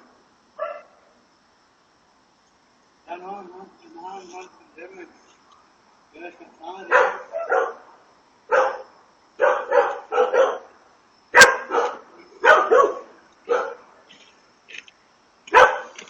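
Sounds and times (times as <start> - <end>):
dog barking: 0.6 - 1.0, 6.9 - 7.9, 8.5 - 10.7, 11.4 - 13.8, 15.5 - 16.0.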